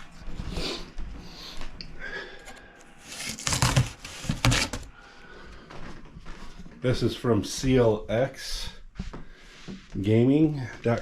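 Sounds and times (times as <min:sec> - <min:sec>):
cardboard scraping: 0:03.0 - 0:05.0
cardboard box rustling and knocking: 0:03.1 - 0:04.9.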